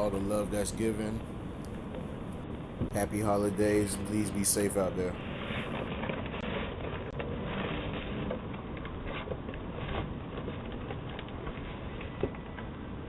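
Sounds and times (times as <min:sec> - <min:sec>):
faint clicks: 0:00.0 - 0:05.8
outdoor background noise: 0:00.0 - 0:13.0.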